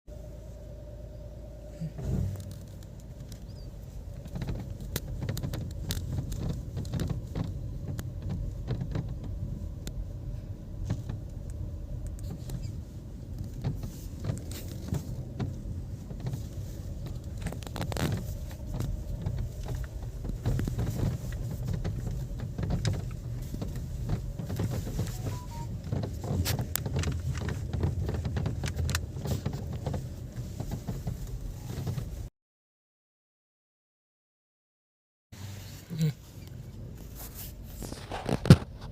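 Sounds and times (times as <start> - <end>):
car driving rumble: 0.1 - 32.3, 35.4 - 38.9.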